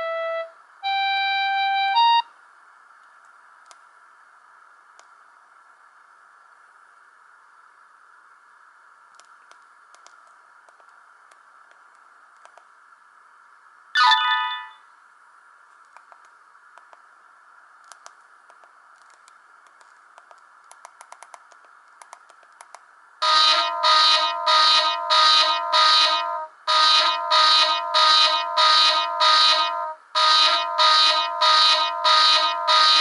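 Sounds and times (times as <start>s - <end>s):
faint clicks: 9.1s - 12.7s, 15.7s - 17.0s, 17.8s - 22.9s
phone ringtone beeping chords: 14.0s - 14.8s.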